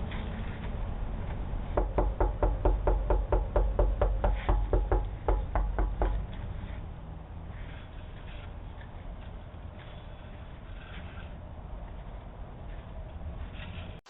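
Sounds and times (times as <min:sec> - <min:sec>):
rapid knocking on a door: 0:01.8 - 0:06.2.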